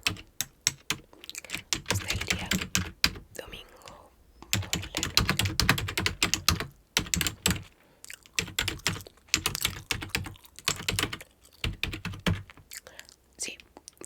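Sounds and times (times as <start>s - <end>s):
keyboard typing clicks: 0.0s - 3.2s, 4.4s - 7.7s, 8.3s - 12.6s.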